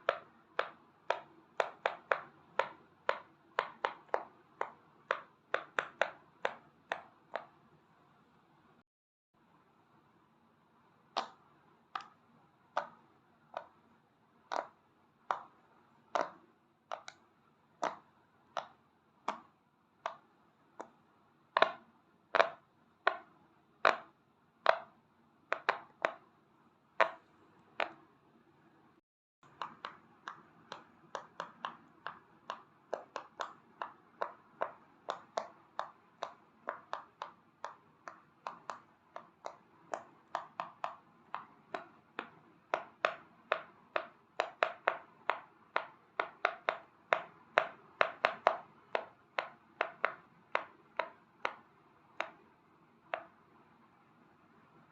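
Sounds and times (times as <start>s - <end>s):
pop-it toy bubbles popping: 0.0s - 7.5s, 14.5s - 15.5s, 24.7s - 26.3s, 29.4s - 52.4s.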